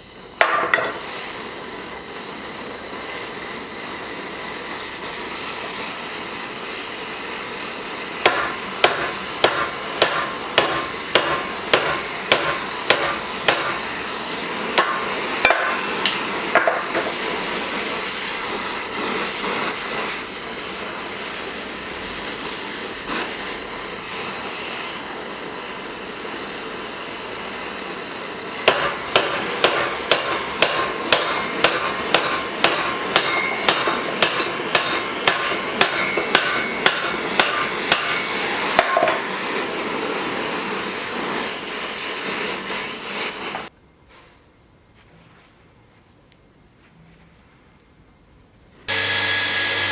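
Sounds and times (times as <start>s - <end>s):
hammer blows on metal: 8.2s - 14.0s, 28.6s - 39.3s.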